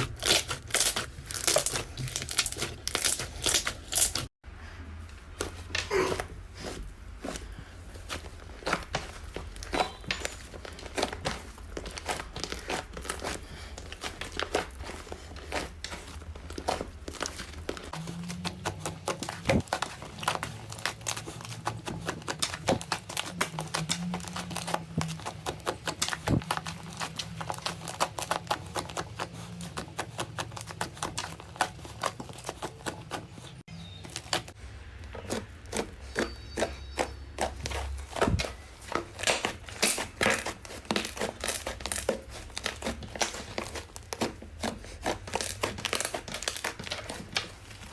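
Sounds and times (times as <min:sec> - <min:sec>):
slime crackling and popping: 0:00.0 - 0:04.3, 0:35.3 - 0:47.9.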